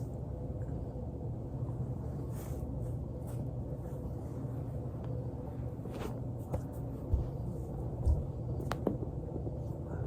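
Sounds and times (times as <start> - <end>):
steady low rumble: 0.0 - 10.0.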